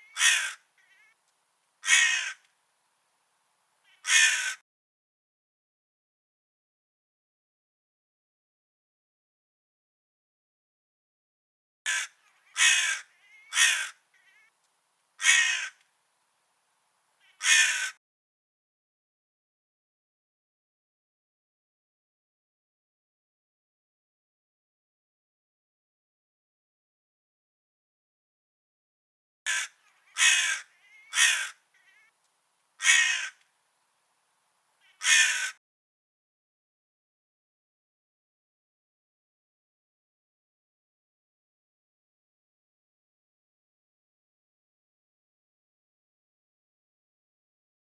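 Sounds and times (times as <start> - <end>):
crow cawing: 0.0 - 1.2, 1.8 - 2.5, 3.9 - 4.6, 11.9 - 14.5, 15.2 - 15.8, 17.2 - 18.0, 29.5 - 32.1, 32.8 - 33.4, 34.8 - 35.6.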